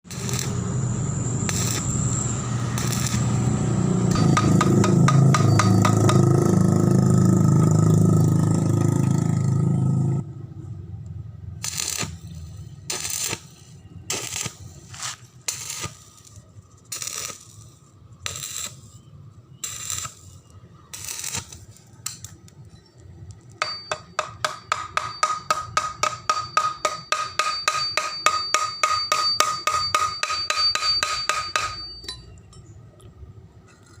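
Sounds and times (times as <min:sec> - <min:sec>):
ringing metallic strikes: 0:00.1 - 0:09.4, 0:23.6 - 0:32.8.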